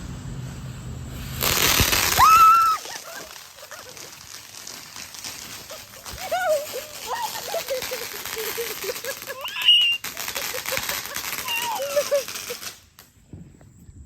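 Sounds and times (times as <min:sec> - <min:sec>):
firework rushing hiss: 0:00.0 - 0:13.5
short wailing cry: 0:09.1 - 0:12.7.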